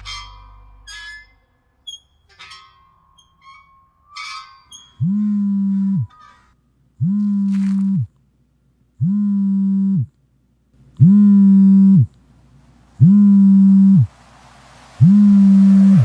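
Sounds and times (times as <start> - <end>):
low sliding tone: 11.7 - 16.0.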